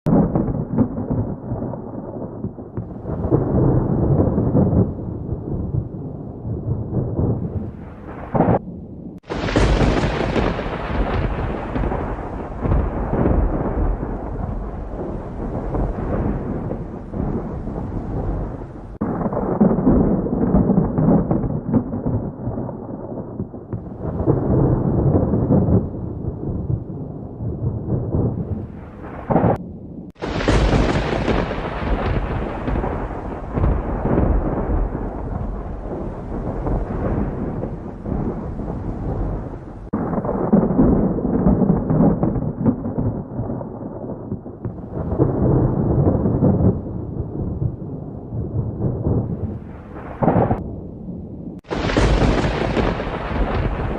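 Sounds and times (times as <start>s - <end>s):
thunder rumbling: 0.0s - 53.9s
steady rain: 9.2s - 21.0s, 23.7s - 43.2s, 51.6s - 53.9s.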